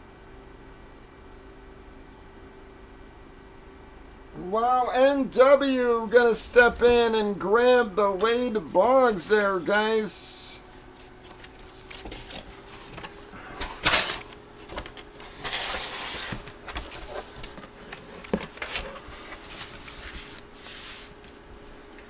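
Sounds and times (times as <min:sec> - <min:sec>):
plastic and cardboard rustling: 0:10.9 - 0:21.6.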